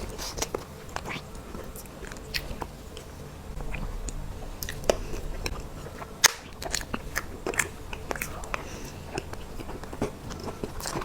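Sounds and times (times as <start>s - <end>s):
mouth clicks and smacks: 0.0s - 3.0s
wet chewing: 0.0s - 11.0s.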